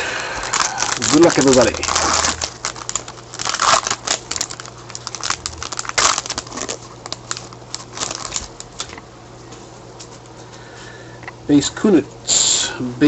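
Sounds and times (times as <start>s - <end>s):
wrapper crinkling being torn open: 0.4s - 9.0s.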